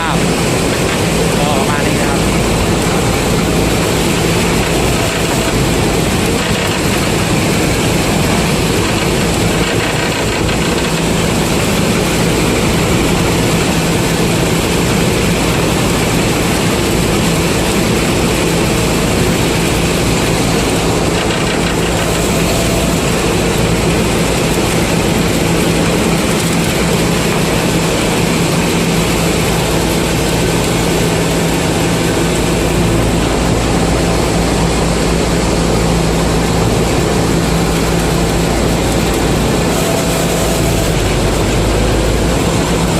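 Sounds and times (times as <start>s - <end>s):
combine harvester engine running: 0.0s - 42.9s.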